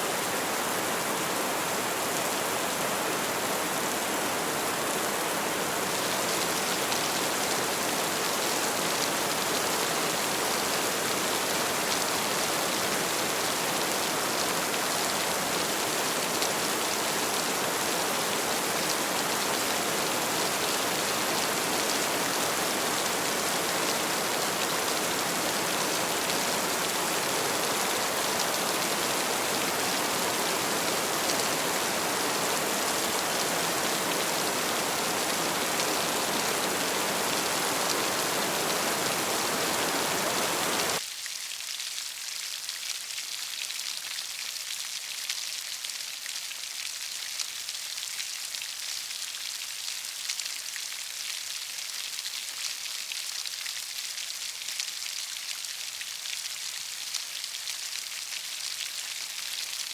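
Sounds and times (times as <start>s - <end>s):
heavy rain falling: 0.0s - 41.0s.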